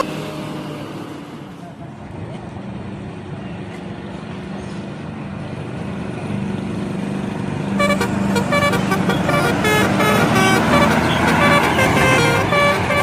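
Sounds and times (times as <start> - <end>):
bus engine running: 0.0 - 13.0
musical air horn tune: 7.8 - 13.0.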